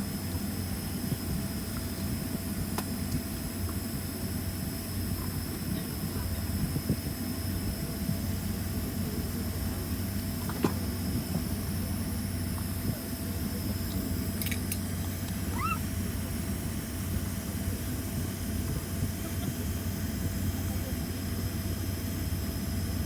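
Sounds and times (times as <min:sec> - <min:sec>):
airliner cabin hum: 0:07.7 - 0:23.0
short rising squeak: 0:15.5 - 0:15.8.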